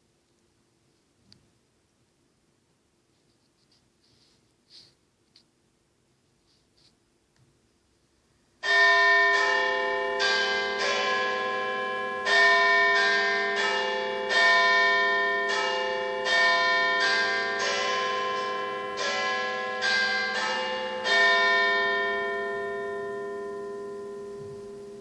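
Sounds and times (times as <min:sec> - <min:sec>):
clock tower bells chiming: 0:08.6 - 0:25.0.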